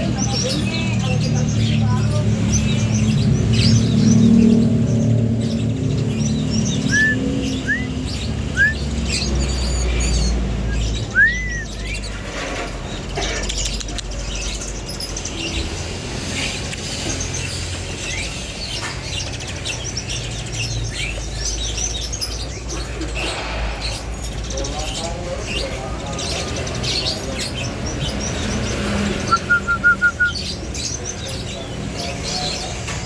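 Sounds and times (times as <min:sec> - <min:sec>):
caged birds chirping: 0:00.0 - 0:33.0
whistled bird notes: 0:05.4 - 0:12.2, 0:20.6 - 0:31.4.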